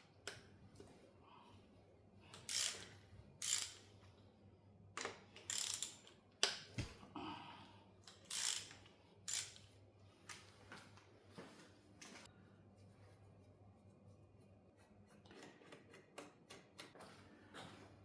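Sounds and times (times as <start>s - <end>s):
ratchet wrench clicking: 2.4s - 3.9s, 5.4s - 6.1s, 8.2s - 9.7s.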